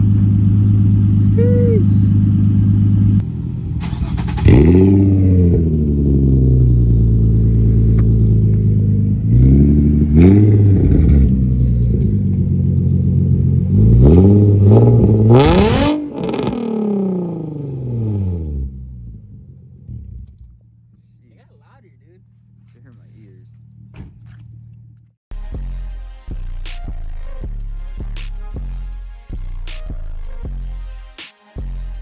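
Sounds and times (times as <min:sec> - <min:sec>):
car engine revving: 0:00.0 - 0:25.0.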